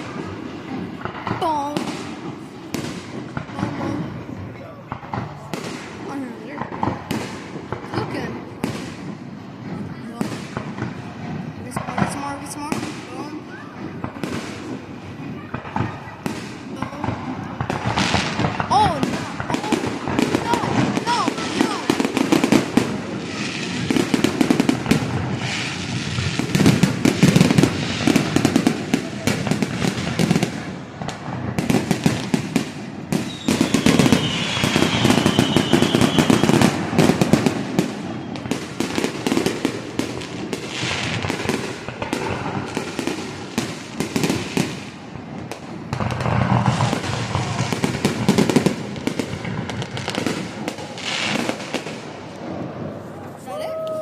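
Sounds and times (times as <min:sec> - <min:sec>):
fireworks booming and crackling: 0:00.0 - 0:54.0
wavering firework whistle: 0:33.1 - 0:38.9.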